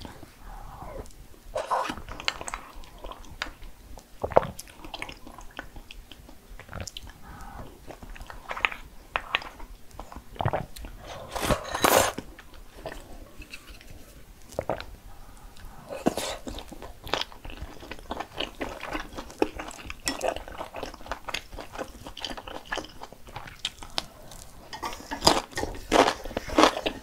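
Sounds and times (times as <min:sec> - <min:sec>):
person chewing crunchy food: 0:00.0 - 0:13.2, 0:13.8 - 0:27.0.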